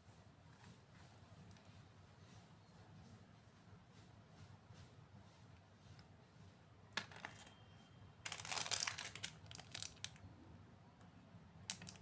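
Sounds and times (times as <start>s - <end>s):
packaging crinkling: 8.3s - 10.2s, 11.7s - 12.0s.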